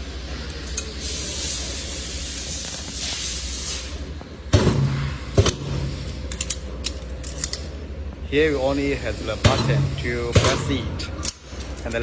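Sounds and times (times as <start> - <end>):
air hissing: 0.2 - 6.3.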